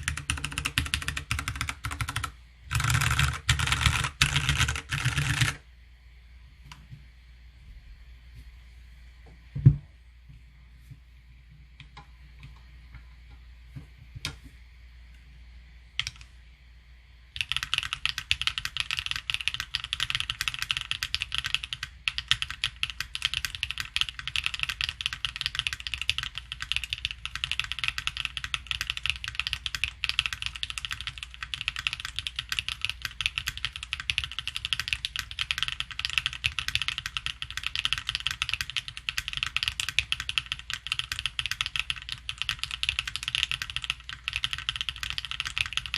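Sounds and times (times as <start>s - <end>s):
fast continuous keyboard typing: 0.0s - 5.6s, 16.0s - 16.3s, 17.4s - 45.9s.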